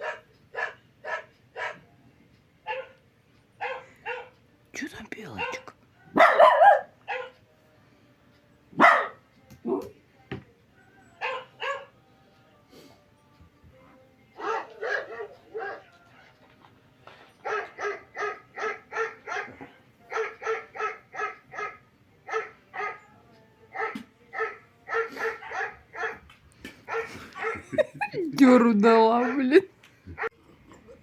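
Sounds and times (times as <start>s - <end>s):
dog barking: 0.0s - 1.8s, 2.6s - 3.0s, 3.6s - 4.3s, 5.4s - 7.4s, 8.8s - 10.0s, 11.2s - 11.9s, 14.4s - 15.9s, 17.4s - 23.1s, 23.7s - 26.2s, 26.9s - 27.8s, 29.2s - 30.4s.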